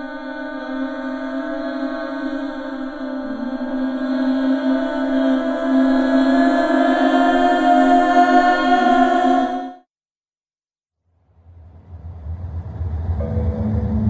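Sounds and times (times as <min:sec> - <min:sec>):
low rumbling drone: 0:11.2 - 0:14.0
horror droning chord: 0:11.4 - 0:14.0.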